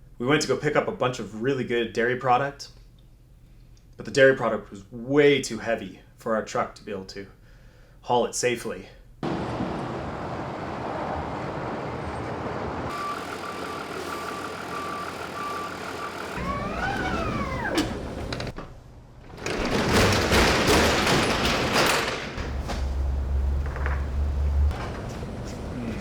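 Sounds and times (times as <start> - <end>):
truck engine running: 9.3 - 18.5
reversing beeper: 12.9 - 17.5.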